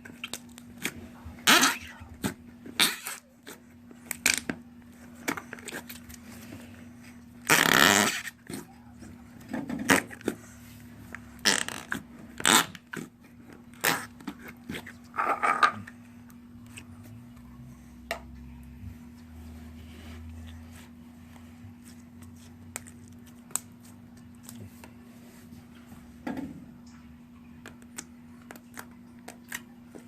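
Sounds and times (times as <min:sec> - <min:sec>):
slime squelching: 0:00.0 - 0:25.7.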